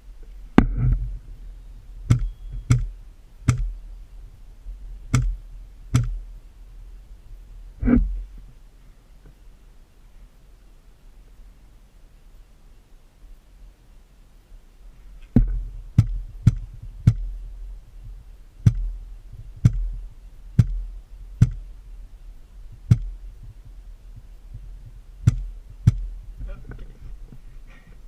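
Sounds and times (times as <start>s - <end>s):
low rumble: 0.0s - 8.8s, 15.2s - 27.7s
sharp thumps: 0.5s - 1.4s, 2.0s - 3.8s, 5.0s - 6.3s, 7.8s - 8.4s, 15.2s - 21.8s, 22.6s - 26.8s.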